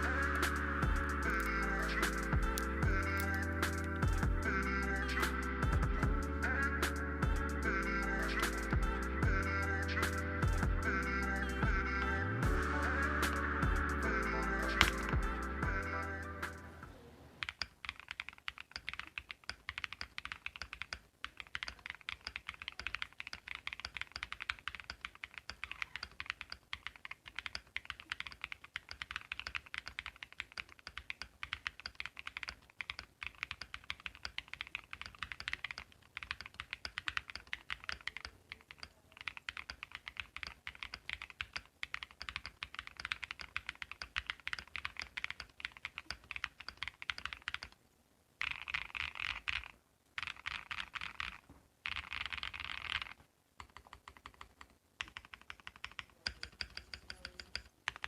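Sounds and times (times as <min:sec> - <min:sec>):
fast typing on mechanical keyboard: 0:17.4 - 0:47.8, 0:48.4 - 0:58.0.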